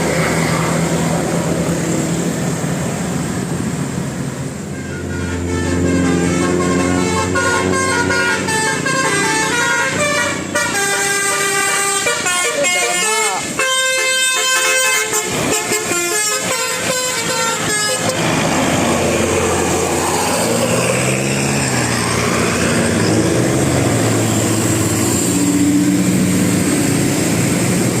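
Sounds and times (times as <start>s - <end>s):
bus engine drone passing: 0.0s - 28.0s
multi-tone bus horn melody: 4.6s - 18.5s.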